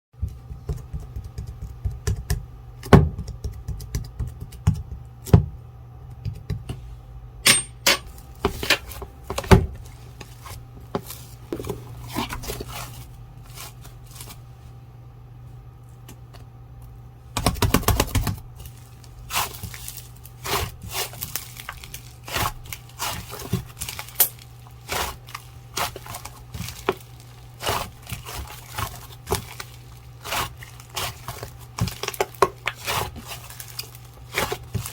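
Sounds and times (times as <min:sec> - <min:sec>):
steady low hum: 0:00.2 - 0:34.9.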